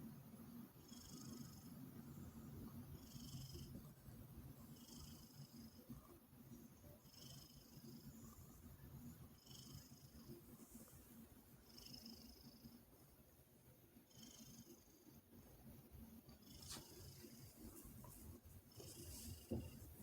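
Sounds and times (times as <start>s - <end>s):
faint high-pitched hiss: 0.0s - 20.0s
cat purring: 7.0s - 12.9s, 14.0s - 15.4s, 16.2s - 20.0s.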